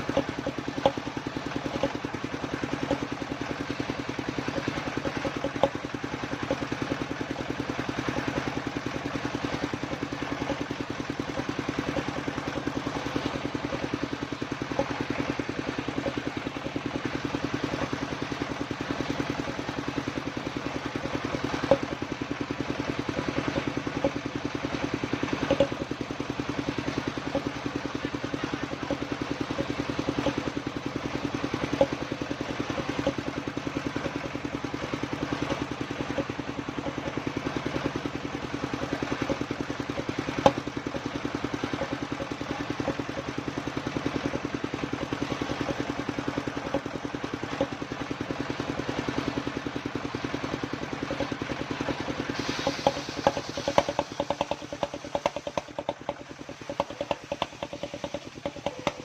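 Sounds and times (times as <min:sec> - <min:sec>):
circular saw engine running: 0:00.0 - 0:59.0
sharp knocks: 0:52.6 - 0:59.0.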